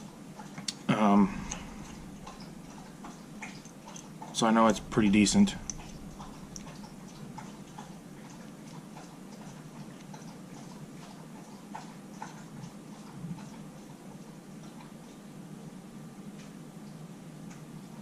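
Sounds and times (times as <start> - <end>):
low hum: 0.9 - 10.3.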